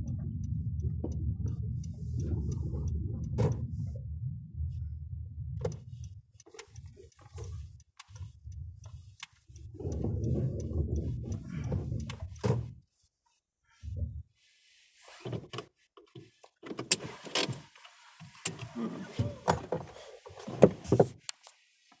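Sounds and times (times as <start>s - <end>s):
car engine and road rumble: 0.0s - 12.8s.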